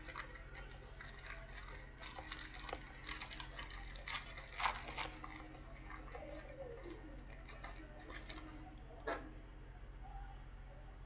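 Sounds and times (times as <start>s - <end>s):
wrapper crinkling: 0.0s - 8.7s.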